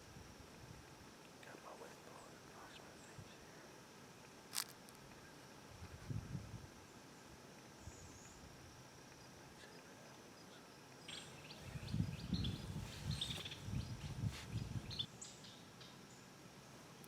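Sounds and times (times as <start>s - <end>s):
faint steady hiss: 0.0s - 17.0s
low rumbling on microphone: 5.7s - 6.7s, 11.6s - 15.0s
bird chirps: 9.6s - 16.3s.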